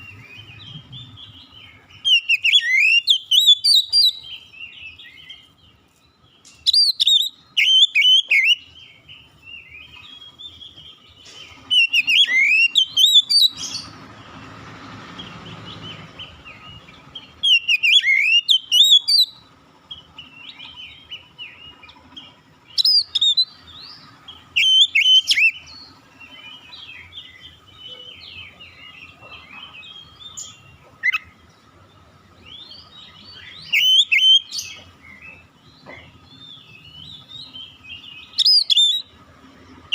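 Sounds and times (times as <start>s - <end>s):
bird singing whistled phrases: 0.0s - 5.5s, 6.6s - 8.8s, 11.7s - 13.9s, 15.9s - 19.4s, 22.7s - 23.6s, 24.6s - 28.6s, 32.5s - 35.3s, 36.4s - 39.1s
soft bird twittering: 0.0s - 39.9s.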